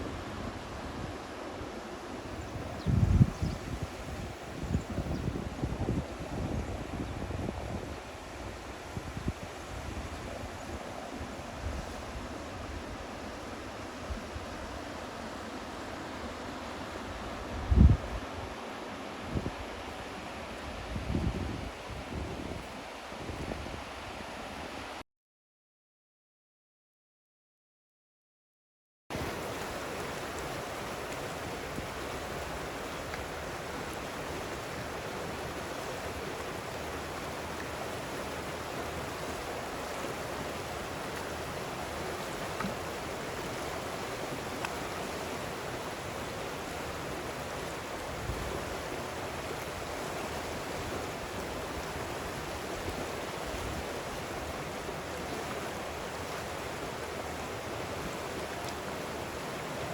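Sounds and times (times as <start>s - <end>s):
river water flowing: 0.0s - 25.0s, 29.1s - 59.9s.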